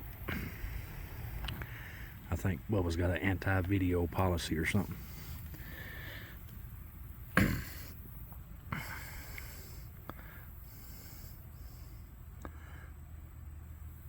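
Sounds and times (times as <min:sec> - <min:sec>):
cat snorting: 0:07.4 - 0:08.0.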